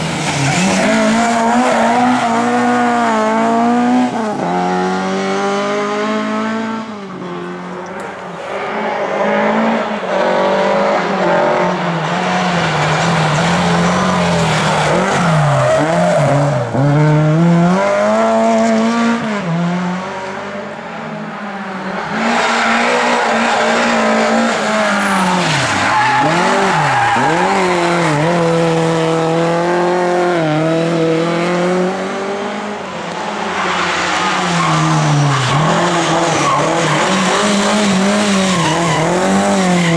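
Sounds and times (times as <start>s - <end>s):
tyres squealing and skidding: 0.0s - 3.1s, 12.0s - 16.8s, 21.4s - 28.9s, 32.9s - 39.9s
race car engines revving: 0.0s - 39.9s.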